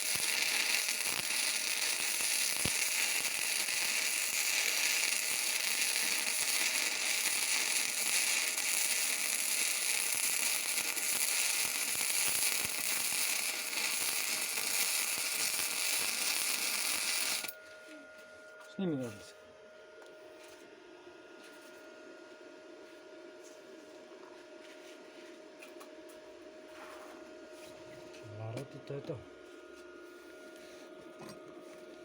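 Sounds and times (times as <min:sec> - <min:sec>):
welding arc crackling: 0:00.0 - 0:17.6.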